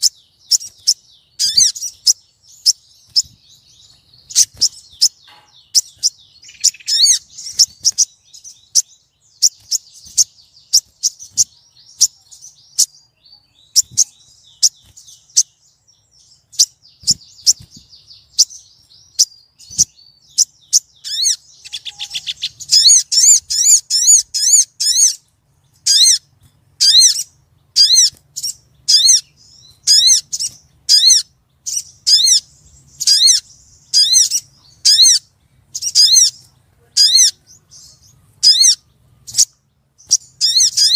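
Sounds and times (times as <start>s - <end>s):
bird high call notes: 0.0s - 25.2s, 25.8s - 40.9s
bird high ticks and chatter: 0.0s - 40.9s
bird trill: 0.0s - 40.9s.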